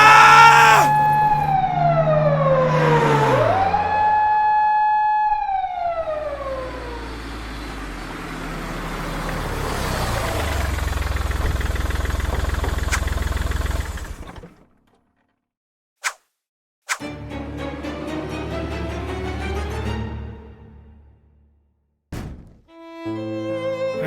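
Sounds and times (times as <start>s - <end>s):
emergency siren winding down: 0.0s - 9.1s
vehicle engine rumble: 5.9s - 15.1s.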